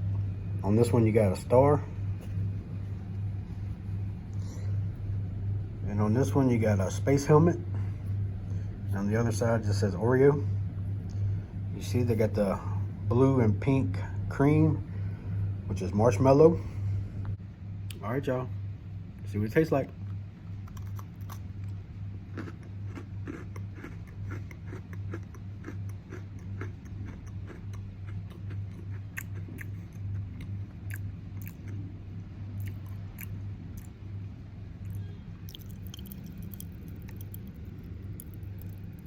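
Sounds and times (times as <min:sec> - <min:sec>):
low hum: 0:00.0 - 0:39.0
chewing cookie: 0:20.0 - 0:34.1, 0:34.8 - 0:39.0
popping candy crackling: 0:34.9 - 0:39.0.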